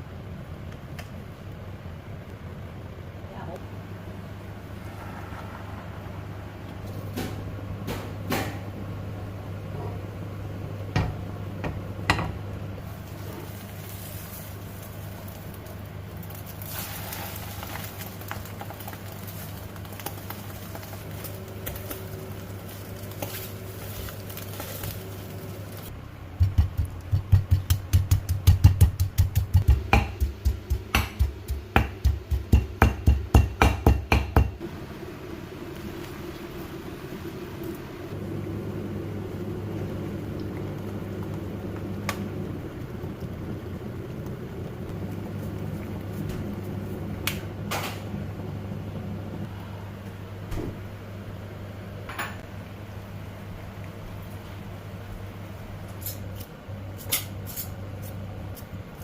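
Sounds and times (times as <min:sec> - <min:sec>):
steady low hum: 0:00.0 - 0:59.0
knife chopping on cutting board: 0:26.4 - 0:34.6.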